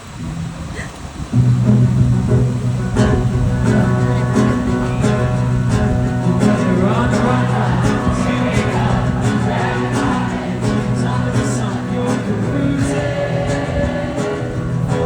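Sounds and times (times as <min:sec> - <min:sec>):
live rock band playing: 0:01.5 - 0:15.0
person singing: 0:03.4 - 0:15.0.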